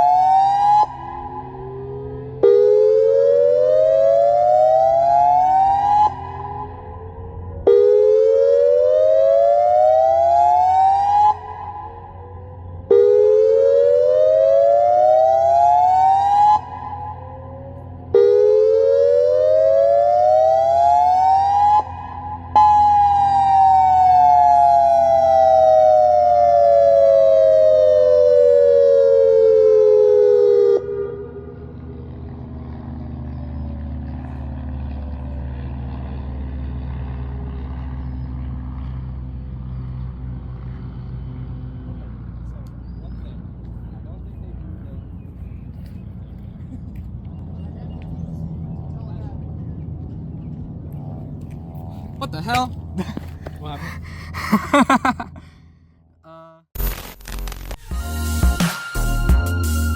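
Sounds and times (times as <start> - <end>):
electronic warning siren whooping: 0.0 - 32.0.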